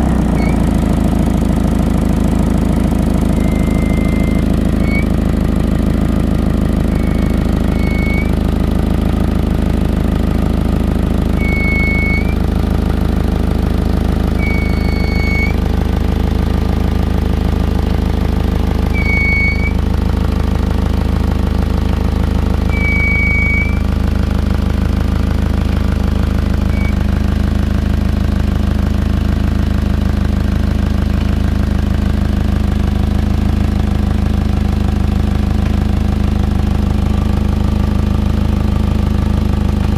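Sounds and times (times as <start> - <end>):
car engine idling: 0.0 - 39.9
short high-pitched chirps: 3.4 - 5.1, 7.0 - 8.4, 11.4 - 12.4, 14.4 - 15.6, 19.0 - 19.8, 22.7 - 23.8, 26.8 - 27.1.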